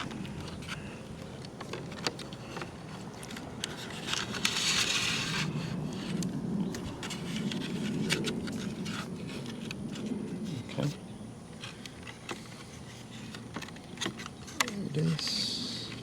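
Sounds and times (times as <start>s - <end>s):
plastic parts clicking and tapping: 0.0s - 4.5s, 11.6s - 16.0s
plastic scraping: 11.6s - 16.0s.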